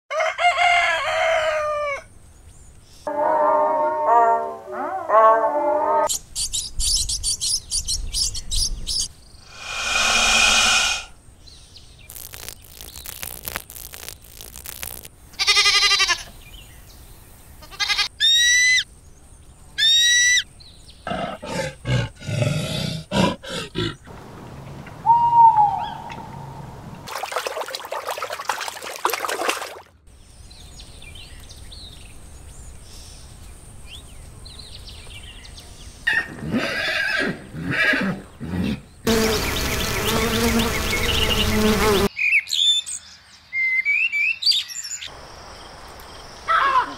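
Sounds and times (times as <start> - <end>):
bursts of noise: 9.5 - 11.1, 12.1 - 15.2
long pitched animal call: 9.5 - 11.1
animal trills: 12.1 - 16.2
rising whistles: 25.0 - 26.5.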